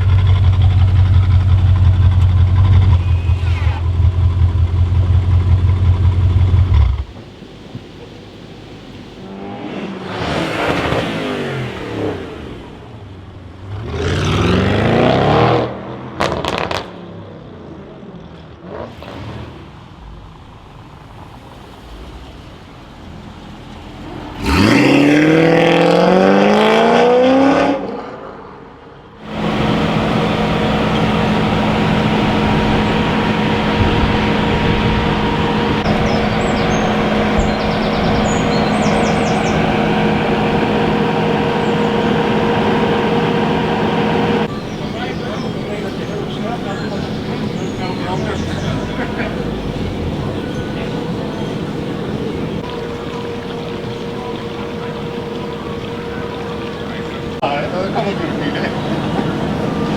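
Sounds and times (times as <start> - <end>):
car engine accelerating hard: 0.0 - 7.4, 9.2 - 17.6, 18.5 - 28.6, 29.2 - 59.9
exhaust crackles: 0.0 - 17.0, 18.7 - 28.0, 29.2 - 59.9
steady low drone: 29.2 - 59.9.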